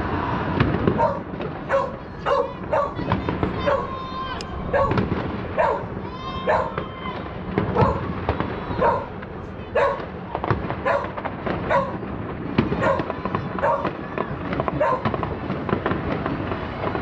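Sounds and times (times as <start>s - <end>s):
fireworks banging and crackling: 0.0s - 17.0s
dog barking: 1.0s - 4.0s, 4.7s - 5.0s, 5.6s - 5.9s, 6.5s - 6.8s, 7.8s - 8.1s, 8.8s - 10.1s, 10.8s - 12.0s, 12.8s - 13.9s, 14.8s - 15.1s.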